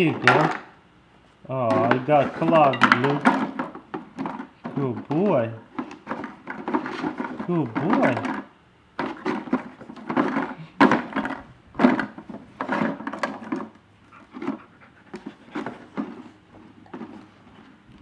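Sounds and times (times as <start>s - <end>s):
plastic bottles knocking in wooden frame: 1.7s - 13.7s.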